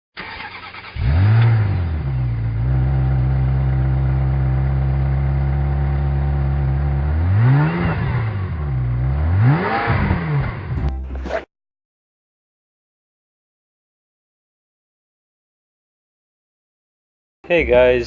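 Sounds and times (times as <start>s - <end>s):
car engine idling and revving: 0.2s - 10.9s.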